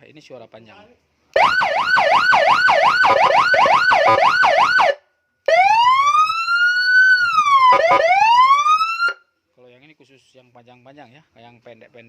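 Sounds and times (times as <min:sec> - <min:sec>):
police siren yelp and wail: 0:01.4 - 0:09.2.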